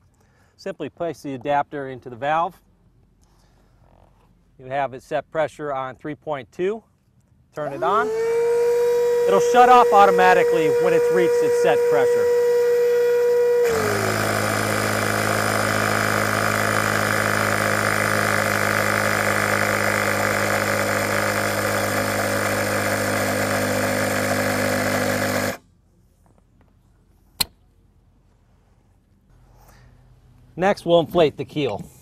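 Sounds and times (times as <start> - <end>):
electric air pump running: 7.6 - 25.6
sharp click: 27.4 - 27.6.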